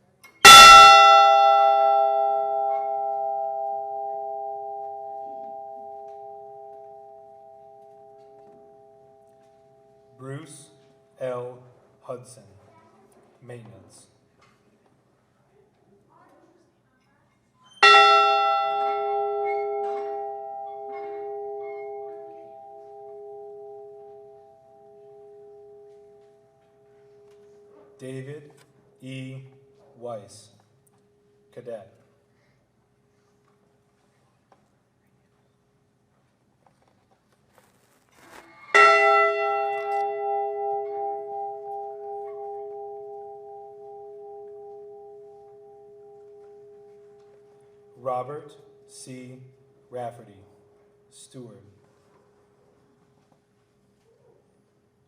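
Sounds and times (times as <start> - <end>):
large bell toll: 0.4 - 10.7, 17.8 - 28.3, 38.7 - 48.8.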